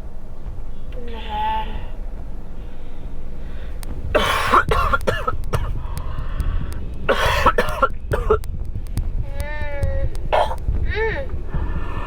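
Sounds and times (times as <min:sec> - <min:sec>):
car cabin rumble: 0:00.0 - 0:12.0
man coughing hard: 0:04.1 - 0:05.8, 0:07.1 - 0:08.4, 0:10.3 - 0:11.1.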